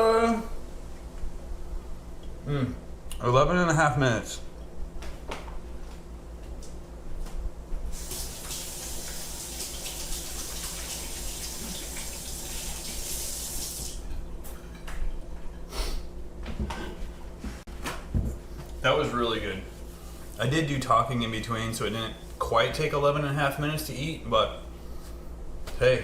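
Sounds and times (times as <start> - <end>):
water pouring: 8.0 - 14.0.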